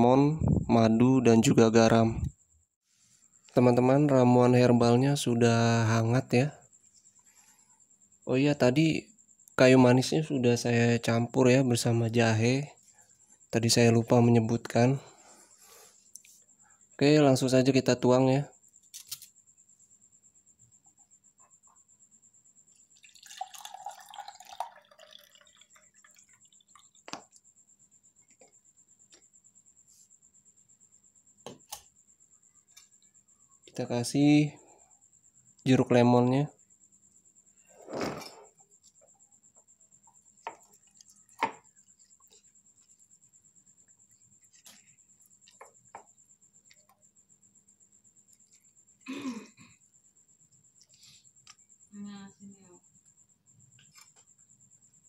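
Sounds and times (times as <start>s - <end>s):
liquid pouring and splashing: 22.9s - 27.4s.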